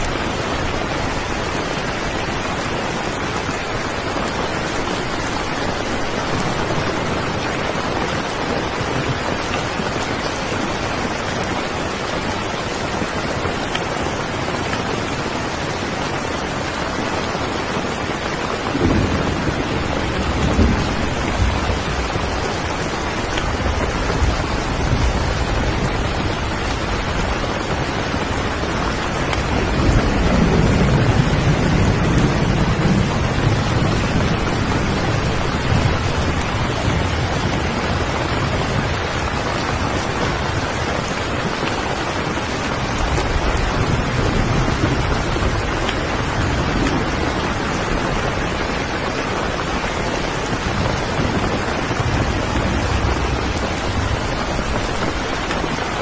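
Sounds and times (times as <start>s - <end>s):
heavy rain: 0.0s - 56.0s
thunder rumble: 16.4s - 56.0s.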